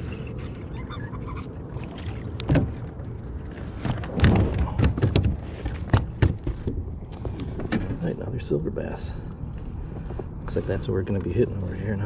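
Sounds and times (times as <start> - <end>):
knocks and thumps on boat: 1.9 - 8.1.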